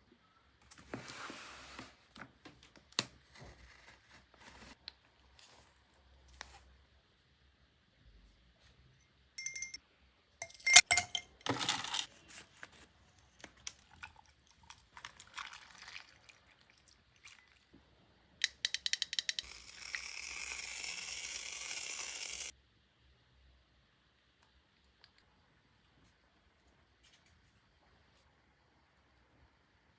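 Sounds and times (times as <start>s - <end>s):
household items clinking and tapping: 9.4s - 9.8s, 10.4s - 12.1s.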